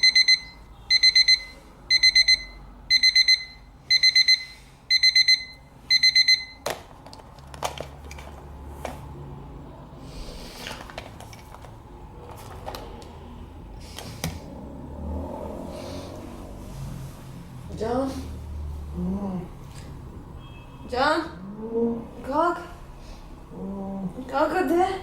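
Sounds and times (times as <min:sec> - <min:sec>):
alarm clock beeping: 0:00.0 - 0:06.6.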